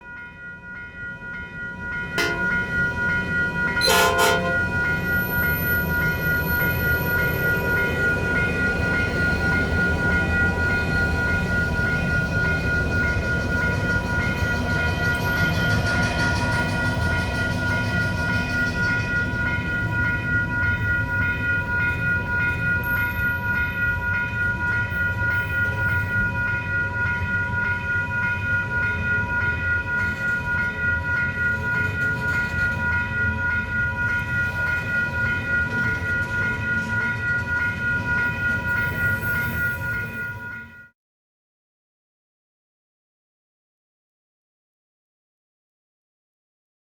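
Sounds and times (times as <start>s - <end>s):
railroad crossing bell ringing: 0.0s - 41.0s
passing train rumble: 0.2s - 40.6s.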